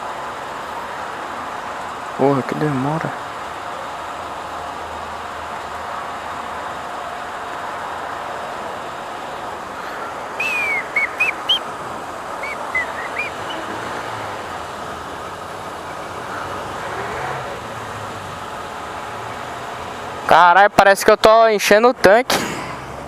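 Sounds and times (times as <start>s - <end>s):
fuel dispenser humming and hissing: 7.4s - 19.9s
short high chirps: 10.4s - 11.7s, 12.4s - 13.7s.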